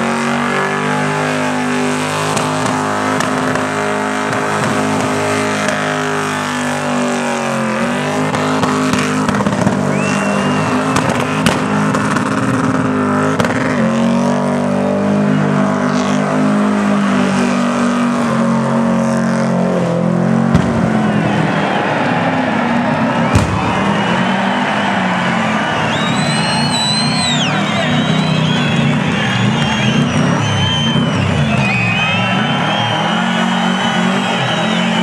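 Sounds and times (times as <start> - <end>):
van engine at high revs: 0.0 - 35.0.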